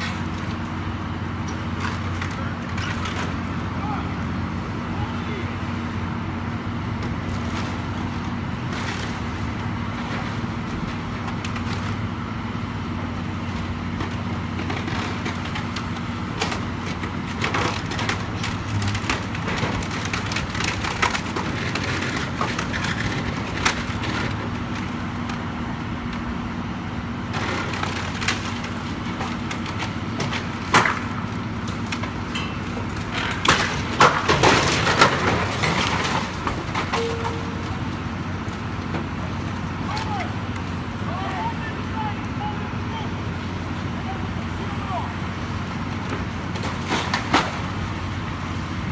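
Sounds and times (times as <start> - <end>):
heavy machine engine running: 0.0 - 48.9
wood cracking and crashing: 13.2 - 26.4, 27.0 - 42.4, 45.2 - 48.9.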